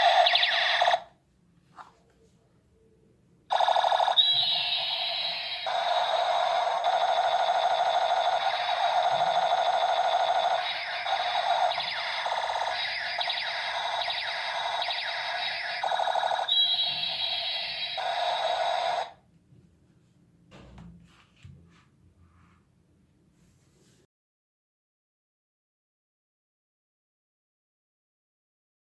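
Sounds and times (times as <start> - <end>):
toy gun electronic tones: 0.0 - 1.0, 3.5 - 19.2.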